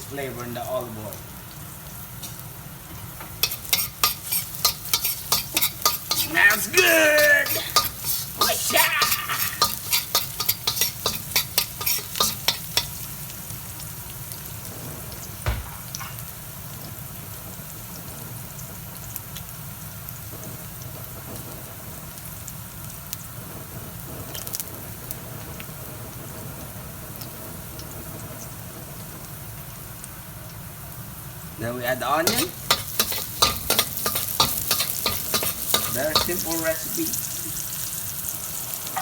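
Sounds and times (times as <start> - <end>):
garlic sizzling in oil: 0.0 - 39.0
utensil clicking against wok: 3.4 - 6.3, 7.4 - 13.0, 32.3 - 36.6
knock: 15.4 - 15.9.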